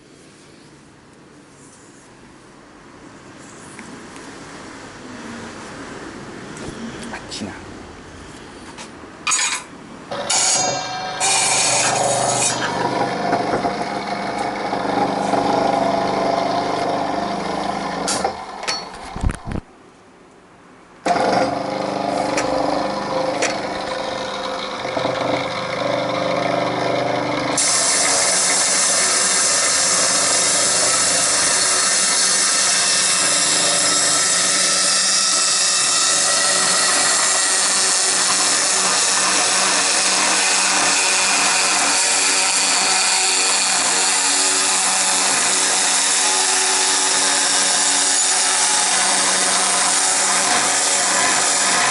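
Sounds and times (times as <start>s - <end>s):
power tool grinding metal tubing: 9.3s - 19.3s, 21.1s - 51.9s.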